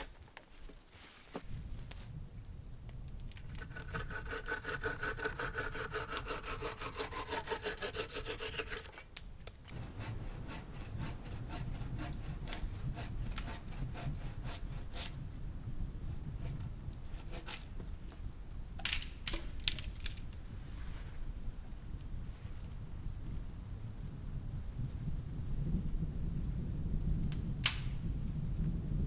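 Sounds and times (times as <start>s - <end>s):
hand saw cutting wood: 3.5s - 15.2s, 16.5s - 17.7s.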